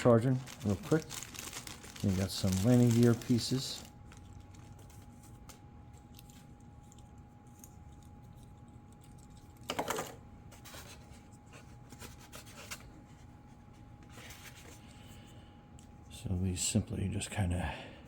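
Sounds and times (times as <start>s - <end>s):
packaging rustle: 0.0s - 10.0s.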